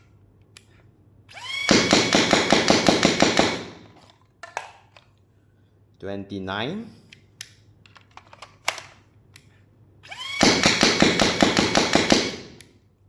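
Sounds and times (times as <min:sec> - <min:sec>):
dart blaster motors whining: 0:01.3 - 0:03.7, 0:10.0 - 0:12.6.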